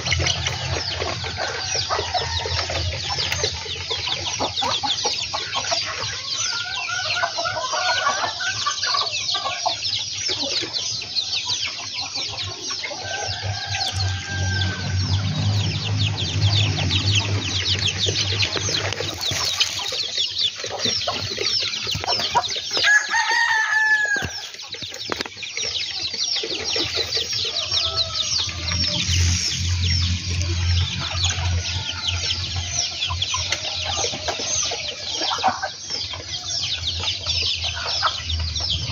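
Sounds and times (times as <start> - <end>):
chickens clucking: 0.0 - 38.9
rapid high peeping: 0.0 - 38.9
rooster crowing: 0.4 - 3.1, 13.0 - 16.0, 22.8 - 24.5, 27.3 - 34.0.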